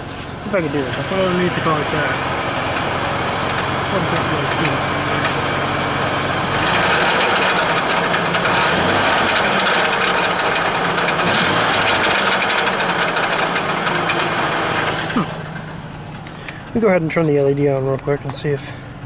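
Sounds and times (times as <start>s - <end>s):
car engine running: 0.0s - 19.0s
metallic rattle: 1.9s - 16.6s.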